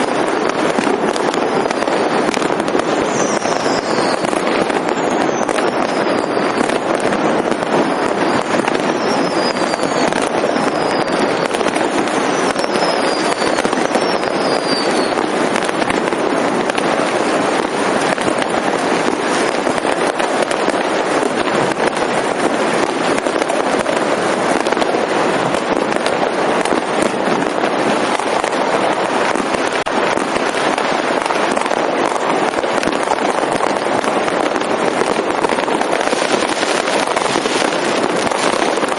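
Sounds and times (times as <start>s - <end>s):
fireworks crackling bangs: 0.0s - 38.9s
falling high whistles: 12.2s - 15.2s.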